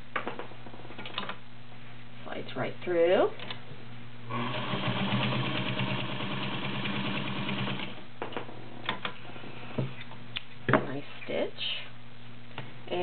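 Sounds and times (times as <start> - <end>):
sewing machine running: 4.3 - 8.0.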